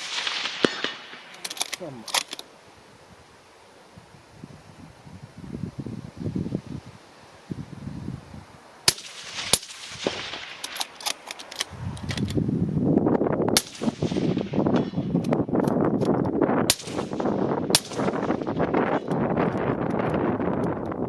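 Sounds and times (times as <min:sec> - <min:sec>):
rifle shots: 0:00.0 - 0:02.4, 0:08.9 - 0:11.6, 0:13.6 - 0:15.1, 0:16.7 - 0:18.8
wind rumble on microphone: 0:04.0 - 0:08.6, 0:11.6 - 0:21.0.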